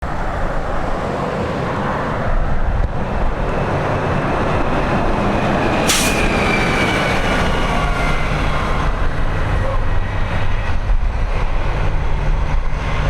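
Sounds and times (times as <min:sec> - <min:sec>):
bus engine rumbling: 0:00.0 - 0:13.0
air hiss: 0:05.8 - 0:06.3.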